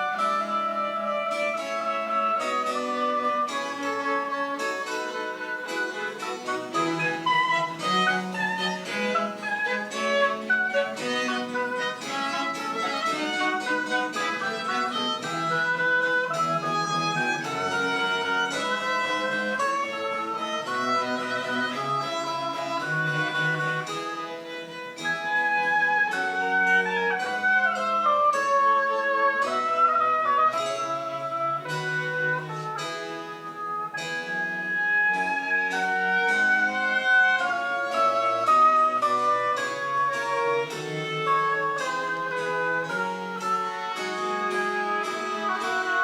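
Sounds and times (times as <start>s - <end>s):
bowed string melody: 0.0s - 46.0s
plucked string accompaniment: 0.0s - 46.0s.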